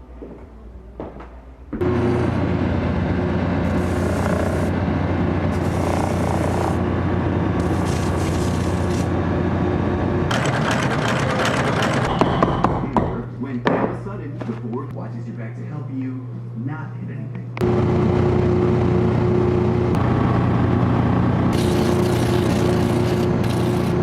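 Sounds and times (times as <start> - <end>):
electric motor humming: 1.8 - 10.6, 17.6 - 24.0
grinding or sanding: 3.6 - 4.8, 5.5 - 6.9, 7.6 - 9.1, 21.5 - 24.0.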